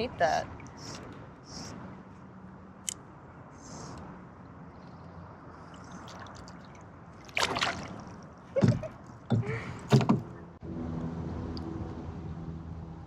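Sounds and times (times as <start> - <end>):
water splashing around boat: 5.6 - 10.4.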